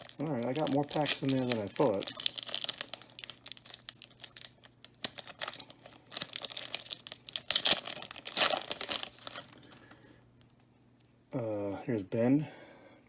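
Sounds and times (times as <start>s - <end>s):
wrapper crinkling and tearing: 0.0s - 9.8s.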